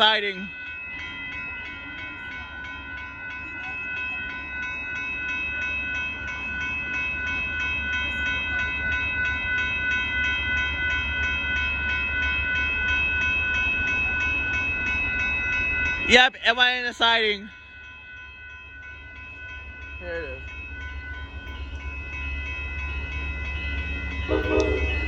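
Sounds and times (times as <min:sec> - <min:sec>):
crossing bell ringing rapidly: 0:00.0 - 0:25.0
train rumbling past: 0:17.8 - 0:25.0.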